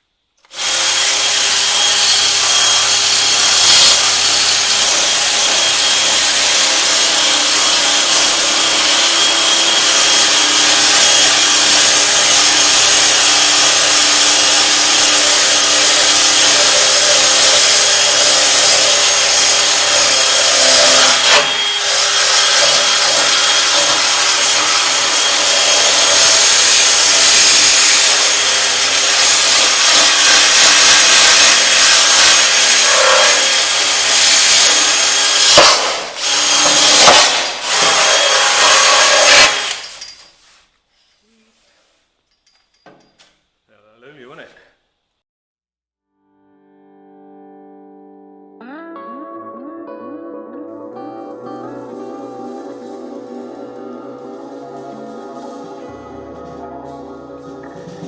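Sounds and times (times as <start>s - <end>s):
power tool abrading steel: 0.4s - 40.4s, 51.6s - 58.0s.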